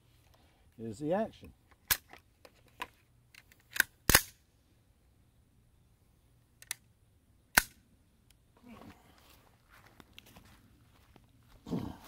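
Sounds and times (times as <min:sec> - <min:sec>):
quiet rifle shots with metallic clack: 0:03.4 - 0:04.4.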